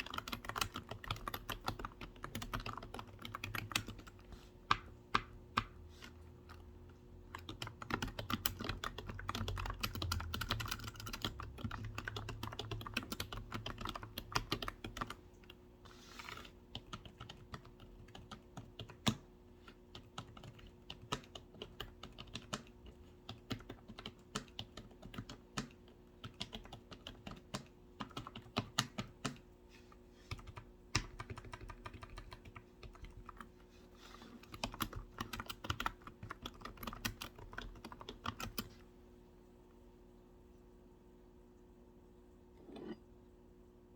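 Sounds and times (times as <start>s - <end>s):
typing on computer keyboard: 0.0s - 5.8s, 7.3s - 15.6s, 16.7s - 29.4s, 30.3s - 33.5s, 34.4s - 38.7s.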